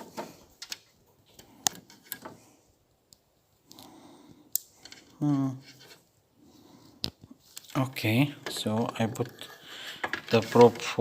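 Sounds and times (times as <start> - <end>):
small hard parts clicking: 8.4 - 11.0.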